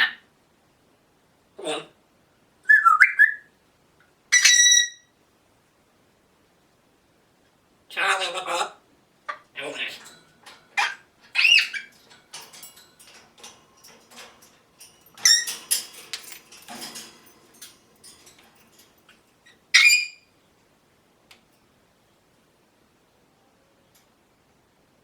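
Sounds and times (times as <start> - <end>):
parrot squawks: 4.3 - 5.0, 19.8 - 20.2
parrot squeaks and clicks: 4.4 - 5.0, 10.7 - 13.2, 15.2 - 17.0, 19.8 - 20.2.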